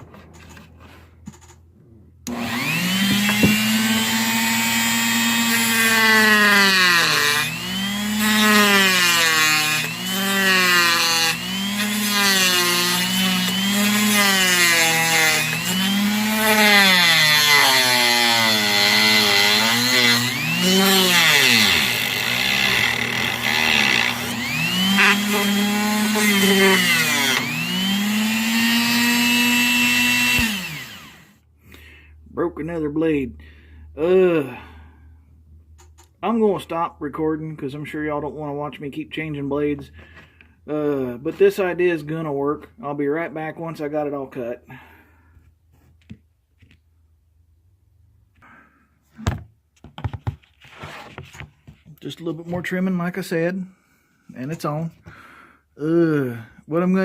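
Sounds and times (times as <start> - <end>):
electric power saw cutting plastic: 2.3 - 31.4.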